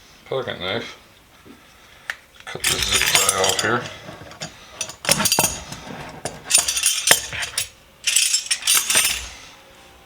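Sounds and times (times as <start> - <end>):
steel hand tools clinking: 2.6 - 9.4.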